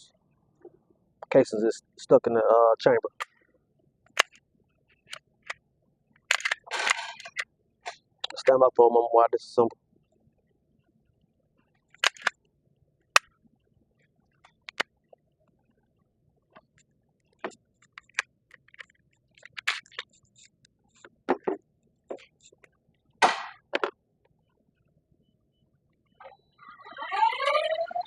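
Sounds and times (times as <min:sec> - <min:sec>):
pistol parts clicking and snapping: 0:04.1 - 0:04.4, 0:06.2 - 0:07.4, 0:11.9 - 0:12.3, 0:14.6 - 0:14.8, 0:17.8 - 0:20.1
scrape or rattle: 0:06.4 - 0:07.4.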